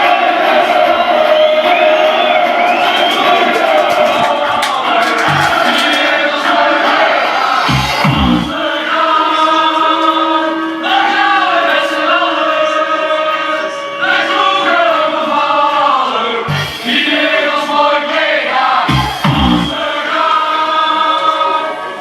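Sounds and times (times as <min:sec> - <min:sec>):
choir-like voices holding notes: 0:00.0 - 0:22.0
deep bass beat: 0:02.9 - 0:06.7, 0:07.4 - 0:08.6, 0:16.5 - 0:17.0, 0:18.9 - 0:19.8.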